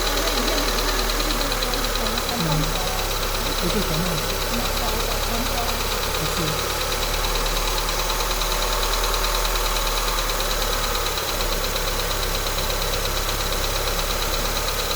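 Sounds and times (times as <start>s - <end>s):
car engine running: 0.0s - 14.9s
rapid even engine ticking: 0.0s - 14.9s.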